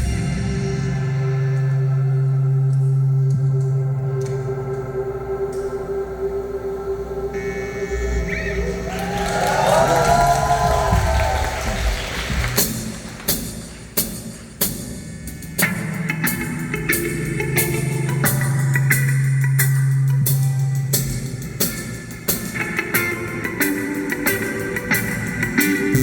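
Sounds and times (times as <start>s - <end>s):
electric guitar notes: 0.0s - 13.6s, 15.3s - 26.0s
drum kit beat: 9.0s - 26.0s.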